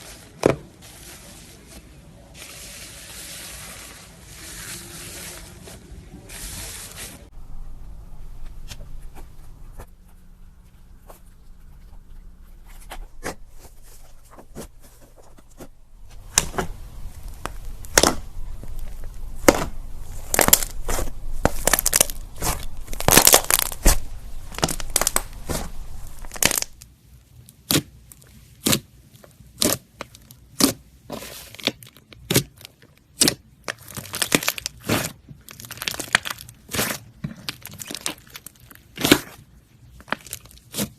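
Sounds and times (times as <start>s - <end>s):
faint low hum: 4.1s - 27.5s
slime crackling and popping: 15.6s - 26.9s, 27.5s - 28.9s, 29.5s - 30.8s, 31.4s - 40.9s.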